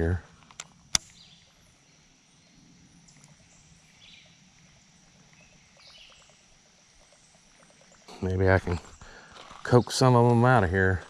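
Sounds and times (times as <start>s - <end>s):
soft ticks and hisses: 2.9s - 11.0s.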